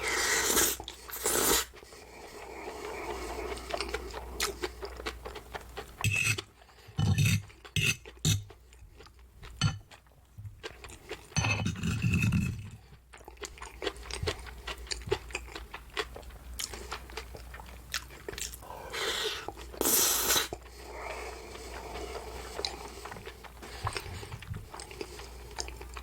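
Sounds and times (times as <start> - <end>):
cutlery clinking on a plate: 11.4 - 12.2.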